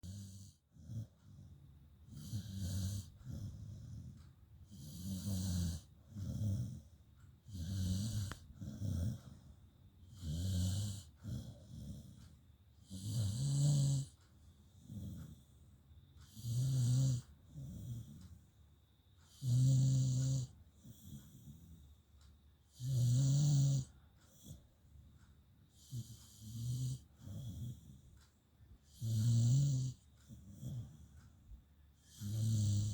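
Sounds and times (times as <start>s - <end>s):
person snoring: 0.0s - 1.1s, 2.1s - 4.1s, 4.7s - 9.4s, 10.0s - 12.2s, 12.8s - 14.2s, 14.8s - 15.4s, 16.2s - 18.2s, 19.3s - 21.8s, 22.7s - 24.6s, 25.8s - 28.0s, 28.9s - 31.1s, 32.0s - 32.9s.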